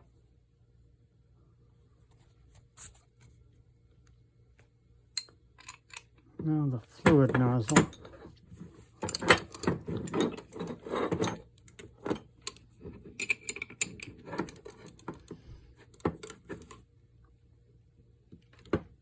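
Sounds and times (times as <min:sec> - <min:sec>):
metal tools clinking and scraping: 0:07.0 - 0:15.2.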